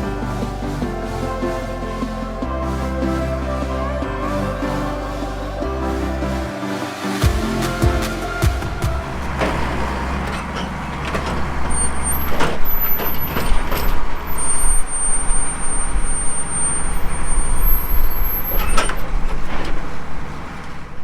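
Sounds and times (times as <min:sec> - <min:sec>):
heavy vehicle engine running: 0:07.2 - 0:21.0.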